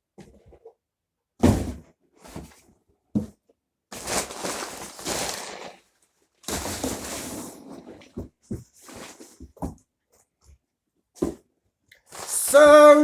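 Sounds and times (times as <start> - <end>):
packaging rustling and scraping: 4.0 - 5.7.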